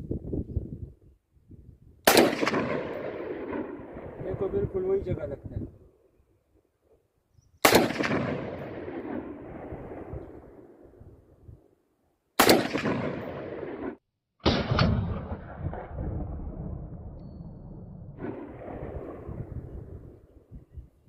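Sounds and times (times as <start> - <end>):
rifle shots with echo: 2.0 - 4.8, 7.6 - 10.9, 12.4 - 20.3.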